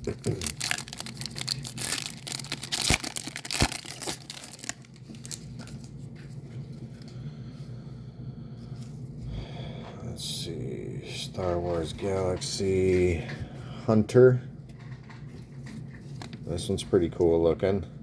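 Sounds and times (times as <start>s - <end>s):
foil wrapper tearing and crinkling: 0.0s - 5.9s.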